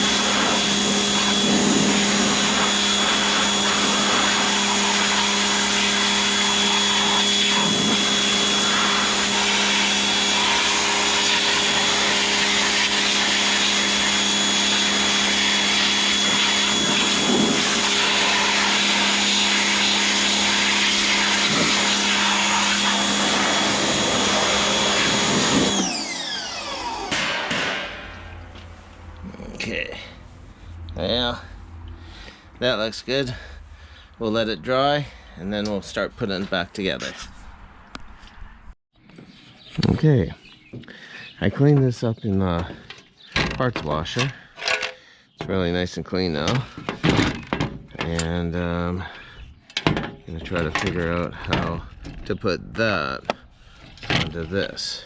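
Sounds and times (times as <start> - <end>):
pressure washer running: 0.0 - 29.8.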